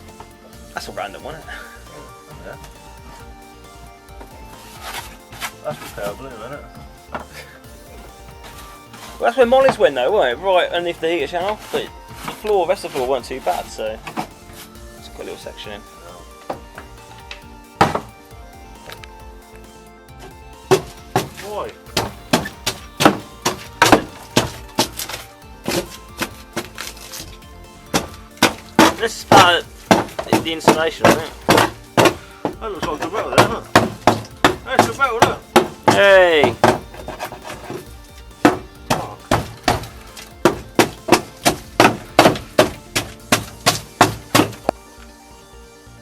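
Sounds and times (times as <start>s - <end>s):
music playing: 0.0s - 46.0s
hammer on metal: 17.8s - 18.1s, 22.0s - 24.9s, 27.9s - 32.2s, 32.9s - 37.8s, 38.4s - 44.6s
tools knocking on car body: 17.8s - 18.1s, 20.7s - 21.4s, 22.0s - 25.0s, 27.9s - 44.7s.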